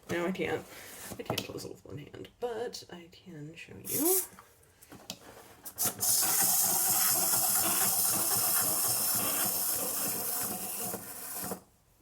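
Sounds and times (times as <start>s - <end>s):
clockwork toy motor whirring: 5.8s - 11.7s.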